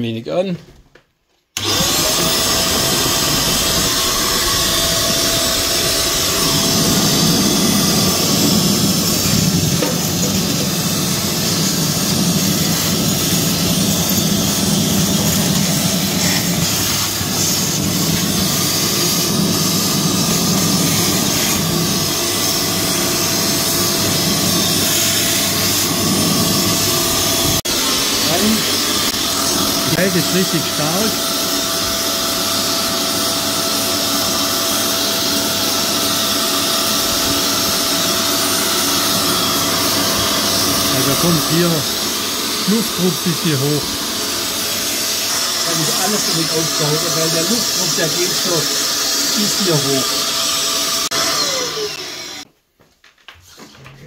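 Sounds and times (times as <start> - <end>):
vacuum motor running: 1.6 - 52.5
deeper hum: 2.1 - 16.7.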